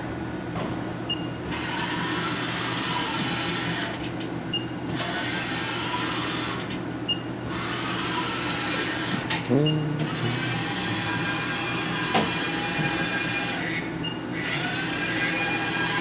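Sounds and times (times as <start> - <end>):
low machine hum: 6.8 - 14.3
motor whine rising and falling: 7.6 - 13.6
short high beep: 9.5 - 10.0.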